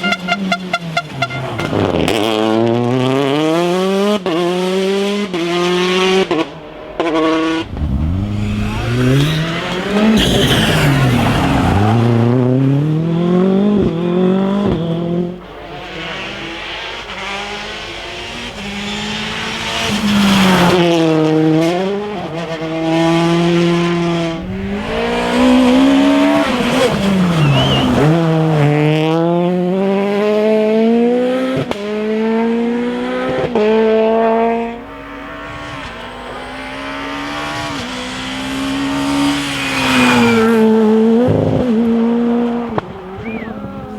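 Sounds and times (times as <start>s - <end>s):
rally car engines revving: 0.0s - 43.9s
sharp exhaust pops: 7.4s - 11.3s.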